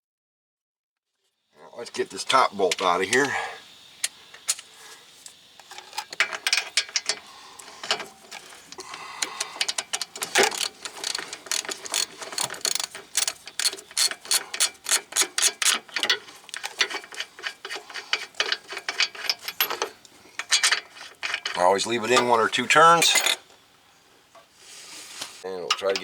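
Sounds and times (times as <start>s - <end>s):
hand ratchet clicking: 5.7s - 21.6s.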